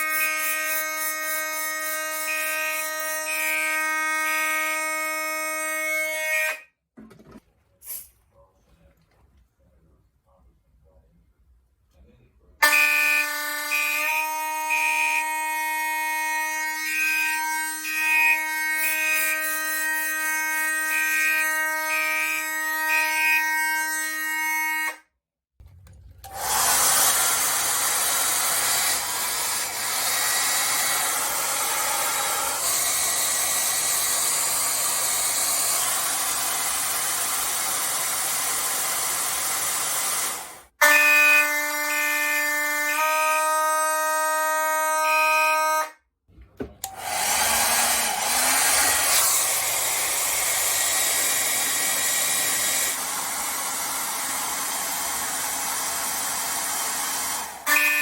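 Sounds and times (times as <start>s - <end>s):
harsh buzzing alarm horn: 0.0s - 6.7s, 12.6s - 25.1s, 40.8s - 46.1s, 57.6s - 58.0s
steady pitched alarm horn: 0.0s - 6.7s, 12.6s - 25.0s, 40.8s - 46.1s, 57.6s - 58.0s.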